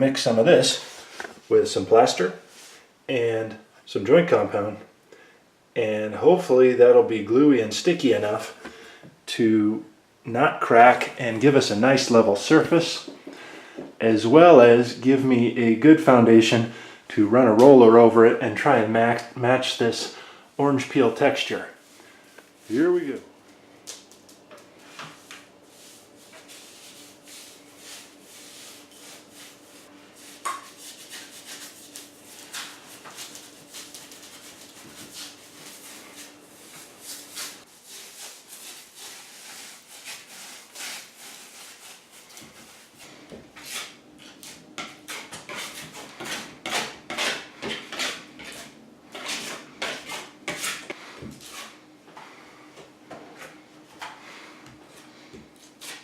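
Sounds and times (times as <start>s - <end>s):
faint steady hum: 0.0s - 56.0s
hand tool scraping plaster: 25.7s - 43.0s, 43.6s - 51.8s, 55.6s - 56.0s.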